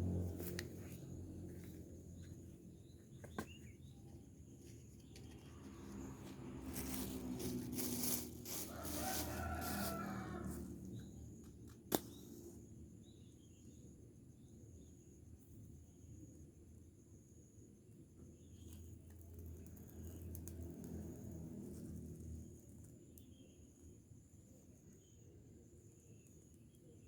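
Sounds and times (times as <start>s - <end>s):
low steady hum: 0.0s - 12.6s
rooster crowing: 6.8s - 11.2s.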